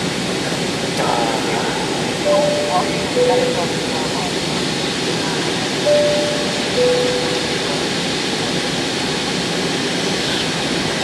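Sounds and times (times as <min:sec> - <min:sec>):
airliner cabin roar: 0:00.0 - 0:11.0
two-note cabin chime: 0:02.2 - 0:04.2, 0:05.9 - 0:07.8.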